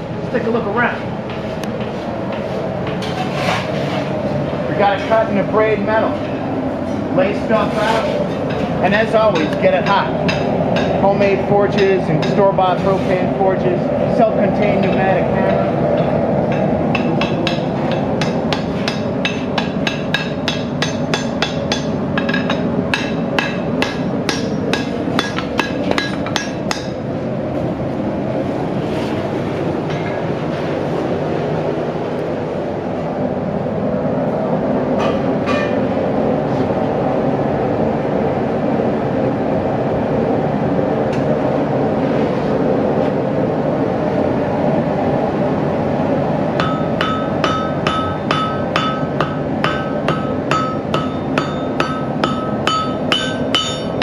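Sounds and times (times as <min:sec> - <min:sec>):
hammer blows on metal: 0:46.6 - 0:54.0.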